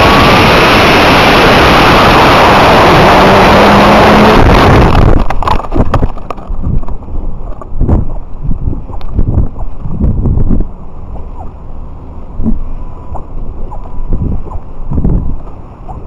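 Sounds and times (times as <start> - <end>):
rocket motor thrust rushing: 0.0 - 6.1
gusty wind buffeting: 0.0 - 16.0.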